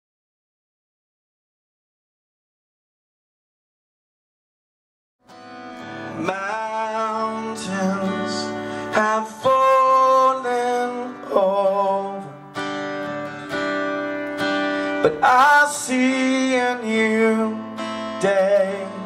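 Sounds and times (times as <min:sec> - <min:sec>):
sustained guitar notes: 0:05.2 - 0:19.0.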